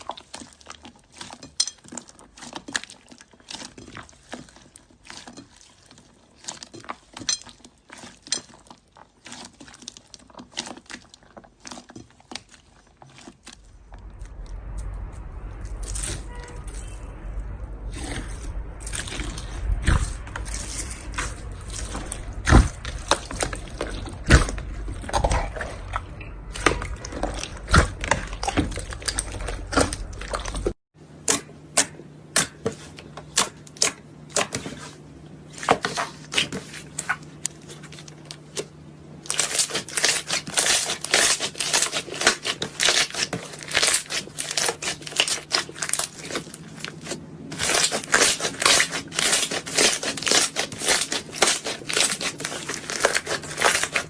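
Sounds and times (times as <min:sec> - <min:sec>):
slime crackling and squishing: 0:00.0 - 0:54.0.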